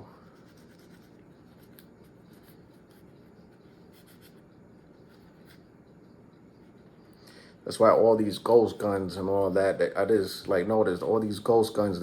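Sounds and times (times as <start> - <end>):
rubbing and scratching of gun parts: 0.3 - 4.4.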